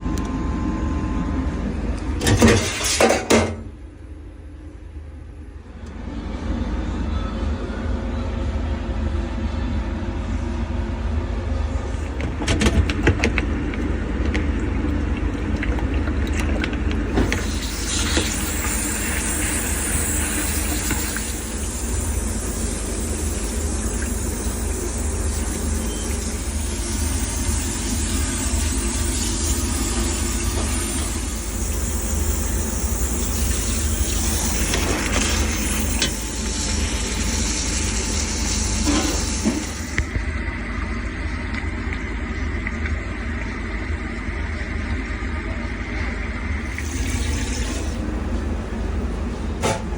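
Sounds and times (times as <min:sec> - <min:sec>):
hvac unit rumbling: 0:00.0 - 0:49.9.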